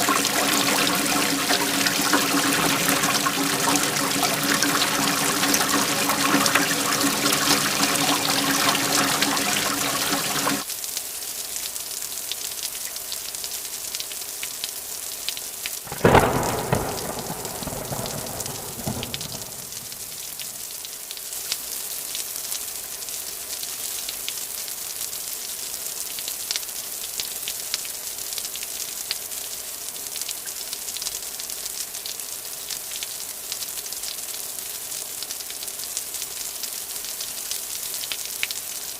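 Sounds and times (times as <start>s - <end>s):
heavy water noise with hum: 0.0s - 11.7s, 15.9s - 20.8s
steady rain falling: 0.0s - 38.9s
thunderclap rumbling: 0.1s - 9.2s, 15.9s - 20.6s.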